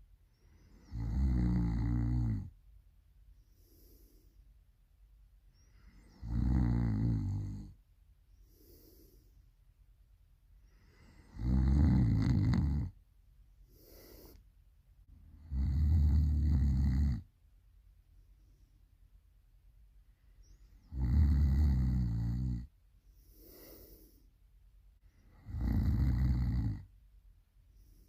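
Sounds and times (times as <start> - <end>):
person snoring loudly: 0.8 - 2.5, 6.2 - 7.7, 11.2 - 12.9, 15.4 - 17.2, 20.9 - 22.7, 25.4 - 26.8.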